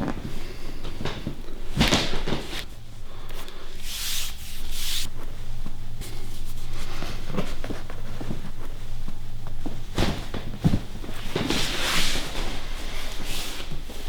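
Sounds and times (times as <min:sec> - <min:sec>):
low steady hum: 0:00.0 - 0:14.0
hands rubbing over skin: 0:03.8 - 0:08.7.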